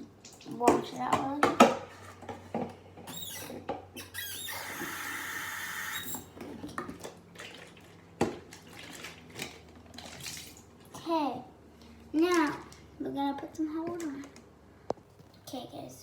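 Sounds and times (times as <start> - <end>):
squeaks of wet bottle rubbed: 3.1 - 6.3
tap water running into bottle: 4.3 - 11.0.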